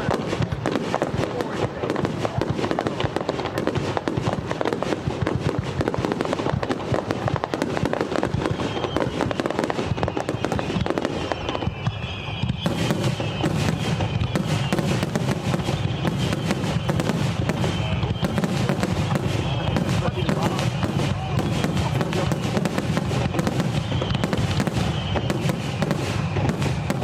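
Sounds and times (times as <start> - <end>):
fireworks bangs and crackling: 0.0 - 27.0.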